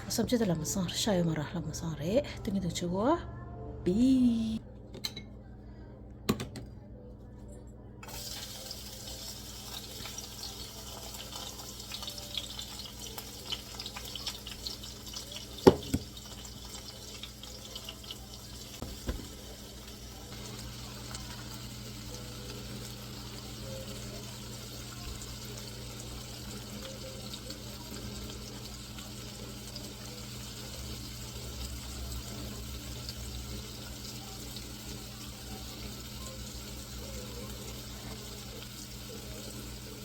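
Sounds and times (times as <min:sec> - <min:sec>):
tap water running into sink: 0:08.0 - 0:19.6.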